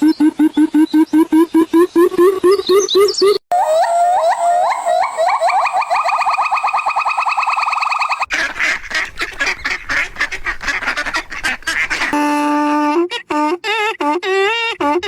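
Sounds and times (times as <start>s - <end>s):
fast high-pitched animal trill: 3.5s - 8.3s
steady held animal call: 3.5s - 8.3s
harsh rapid honking calls: 11.9s - 15.0s.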